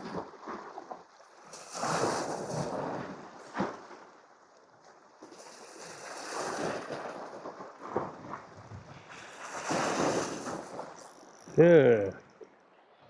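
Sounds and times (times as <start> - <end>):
sea waves washing against rocks: 5.3 - 11.0.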